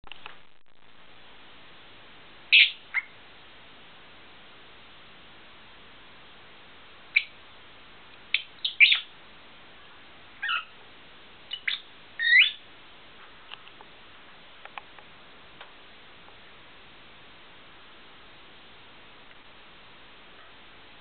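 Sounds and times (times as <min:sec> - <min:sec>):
lovebird chirping: 0:02.5 - 0:03.2, 0:07.1 - 0:07.4, 0:08.3 - 0:09.1, 0:09.9 - 0:10.8, 0:11.5 - 0:12.6.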